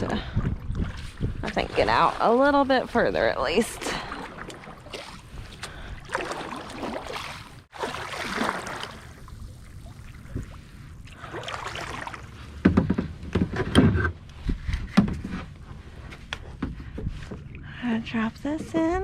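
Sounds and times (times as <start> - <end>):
kayak paddle swishing through water: 0.2 - 13.2.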